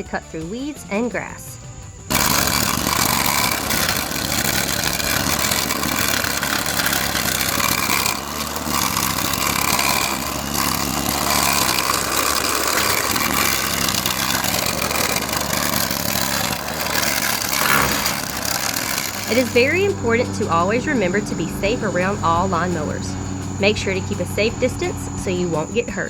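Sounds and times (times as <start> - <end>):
string trimmer cutting grass: 2.0 - 26.0.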